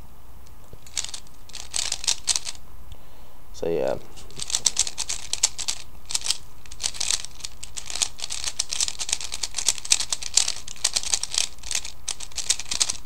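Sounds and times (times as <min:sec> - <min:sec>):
puzzle cube clicking as turned: 0:00.8 - 0:02.6, 0:04.4 - 0:13.0.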